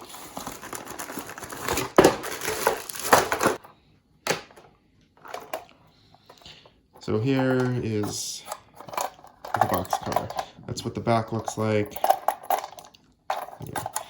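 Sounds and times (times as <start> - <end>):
packaging rustling and crinkling: 0.0 - 3.6.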